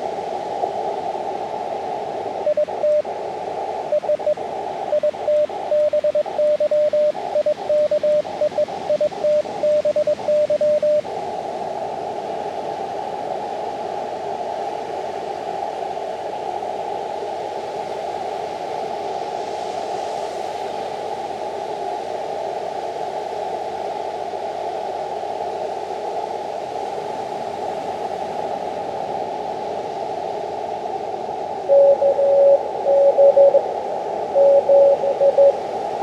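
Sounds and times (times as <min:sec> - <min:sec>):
radio band noise hiss: 0:00.0 - 0:19.8, 0:26.6 - 0:36.0
morse code tone: 0:02.4 - 0:03.0, 0:03.9 - 0:11.0, 0:31.7 - 0:33.7, 0:34.3 - 0:35.6.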